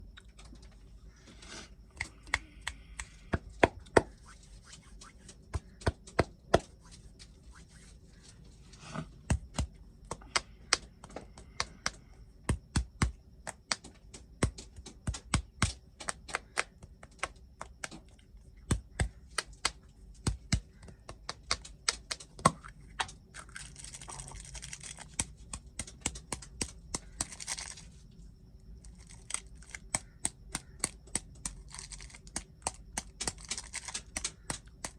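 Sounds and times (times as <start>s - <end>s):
snack packaging crinkling: 23.0s - 27.9s, 28.9s - 34.5s
crisp clicks and snaps: 28.9s - 34.9s.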